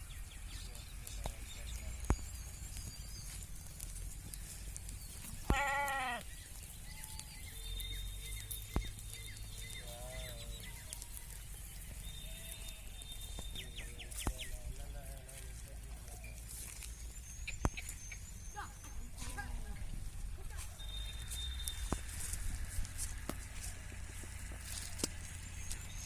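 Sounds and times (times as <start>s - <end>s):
sheep bleating: 5.4s - 6.3s.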